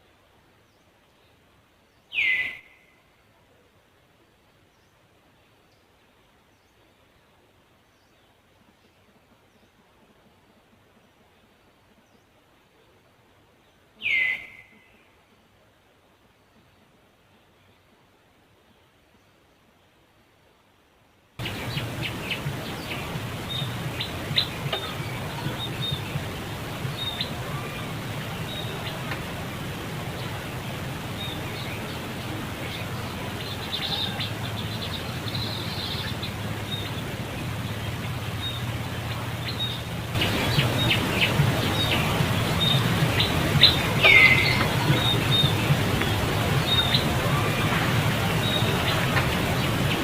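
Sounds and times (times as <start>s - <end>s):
steady low hum: 21.4s - 33.6s, 34.3s - 50.0s.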